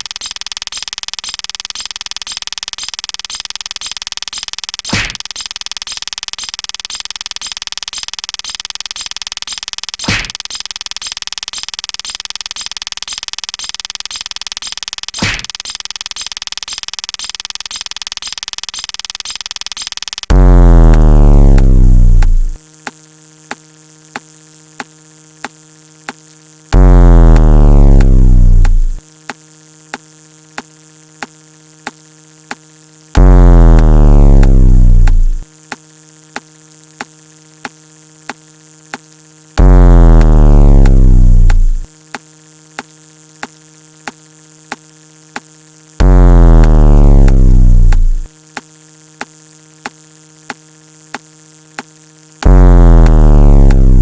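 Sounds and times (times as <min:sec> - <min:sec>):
synth buzz: 0:00.0 - 0:22.6, 0:26.7 - 0:29.0, 0:33.2 - 0:35.5, 0:39.6 - 0:41.9, 0:46.0 - 0:48.4, 0:52.4 - 0:54.0
electronic clicks: 0:00.0 - 0:23.6, 0:26.8 - 0:29.4, 0:33.2 - 0:35.8, 0:39.0 - 0:44.8, 0:46.0 - 0:50.6, 0:51.2 - 0:54.0.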